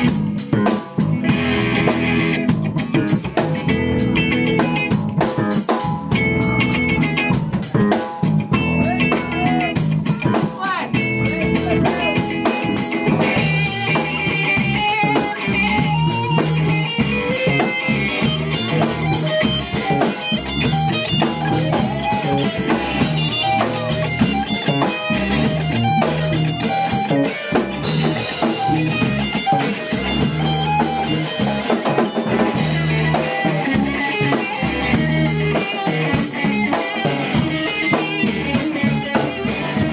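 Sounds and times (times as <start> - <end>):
drum kit: 0.0 - 39.9
guitar: 0.0 - 39.9.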